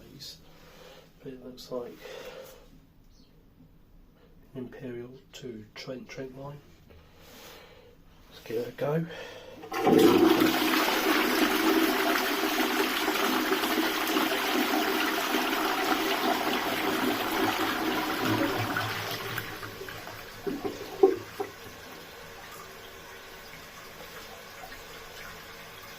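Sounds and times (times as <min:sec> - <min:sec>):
cistern refilling trickle: 0:09.6 - 0:25.9
toilet flushing water rushing: 0:09.6 - 0:25.9.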